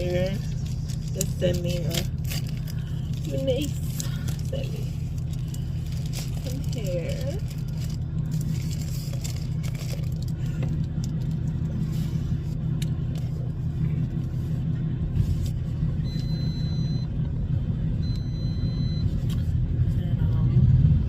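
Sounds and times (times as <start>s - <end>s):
diesel truck engine rumbling: 0.0s - 21.0s
high steady beeps: 16.0s - 17.1s, 18.0s - 19.2s.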